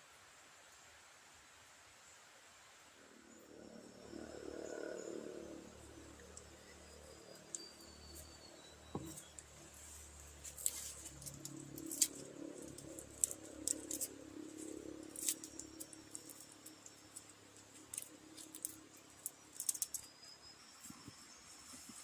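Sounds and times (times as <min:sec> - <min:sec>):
faint low hum: 0:00.0 - 0:22.0
sharp clicks and rattling: 0:10.6 - 0:20.1.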